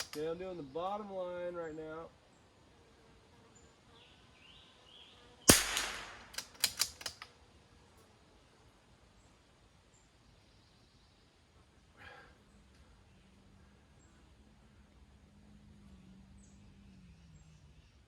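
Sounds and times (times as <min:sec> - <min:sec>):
sharp clicks: 0:00.0 - 0:00.2, 0:05.5 - 0:07.3
rifle shot: 0:05.5 - 0:07.2.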